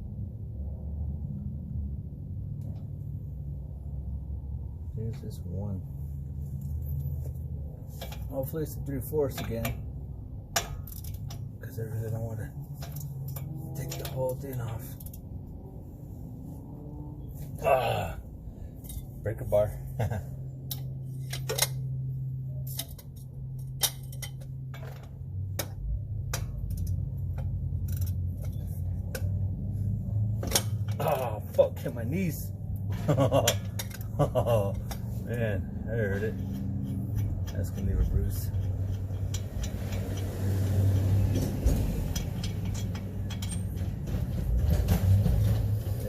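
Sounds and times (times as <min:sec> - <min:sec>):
metallic tool clicks and taps: 0:25.5 - 0:29.4
hand tools clinking on metal: 0:33.1 - 0:46.0.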